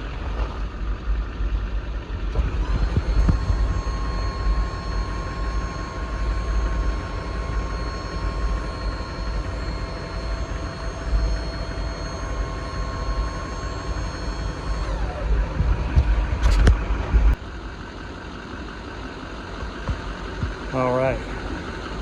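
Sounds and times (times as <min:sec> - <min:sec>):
diesel engine rumbling: 0:00.0 - 0:22.0
faint steady whine: 0:00.0 - 0:22.0.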